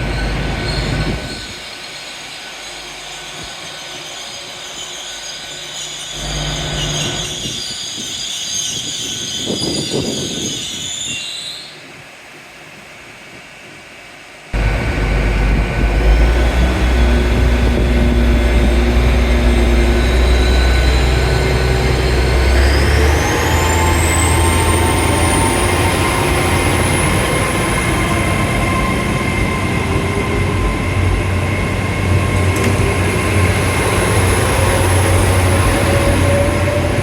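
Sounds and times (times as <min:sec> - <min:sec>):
train wheel squeal: 0:00.0 - 0:12.9, 0:16.0 - 0:37.0
loud low train rumble: 0:00.0 - 0:37.0
rising whine: 0:14.6 - 0:37.0.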